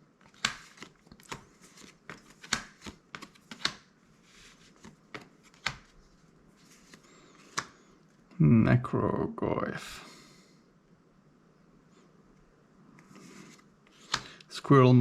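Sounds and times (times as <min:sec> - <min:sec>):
cards rustling and flicking: 0:00.2 - 0:07.9, 0:13.0 - 0:14.4.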